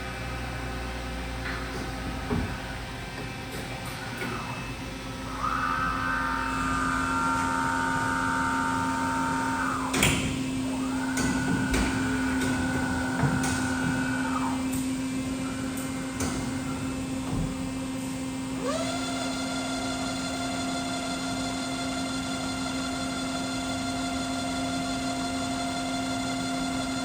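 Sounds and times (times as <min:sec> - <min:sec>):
machine drive whine: 0:00.0 - 0:27.0
machine hum: 0:00.0 - 0:27.0
loud machine clunk: 0:09.8 - 0:14.6.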